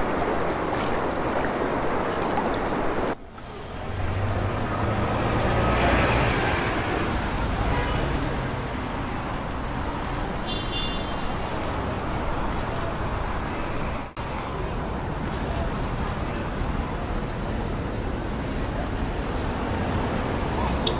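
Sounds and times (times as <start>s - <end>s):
road traffic noise: 0.0s - 20.9s
engine hum: 3.1s - 10.4s.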